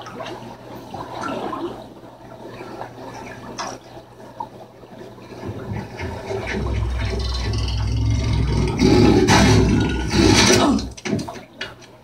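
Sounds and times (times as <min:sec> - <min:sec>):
deep low rumble: 0:06.4 - 0:10.9.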